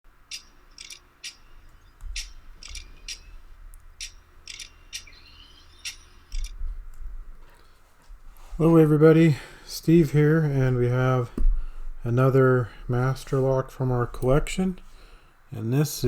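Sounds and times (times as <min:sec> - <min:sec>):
sharp metallic clicks: 0:00.2 - 0:06.6
soft low thumps: 0:11.4 - 0:12.0.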